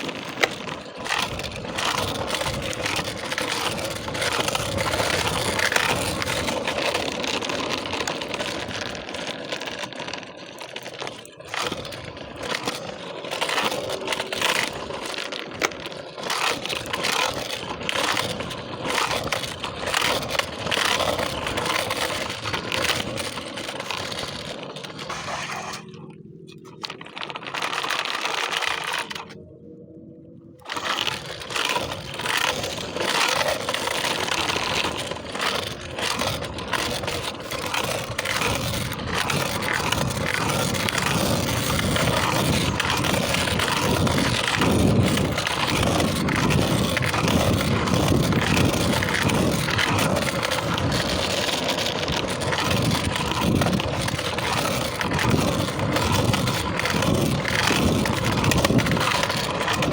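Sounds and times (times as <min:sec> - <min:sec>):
scooter wheels on rough pavement: 0:00.0 - 0:59.9.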